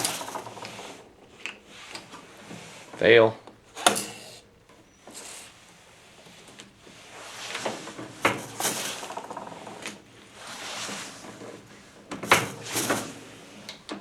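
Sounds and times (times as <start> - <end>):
reloading press metallic clacks: 0.0 - 3.0, 3.7 - 4.4, 7.5 - 14.0
shells scraping and sliding: 0.0 - 3.1, 3.8 - 13.9.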